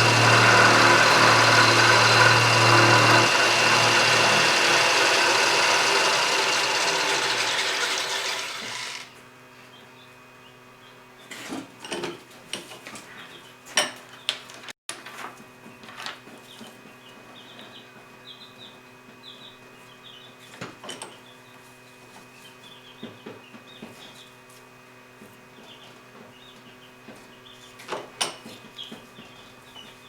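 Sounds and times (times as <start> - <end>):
machine hum: 0.0 - 9.2.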